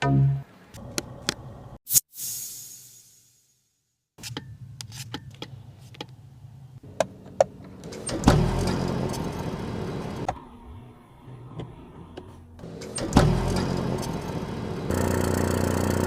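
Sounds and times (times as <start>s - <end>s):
car engine starting and idling: 6.8s - 16.0s.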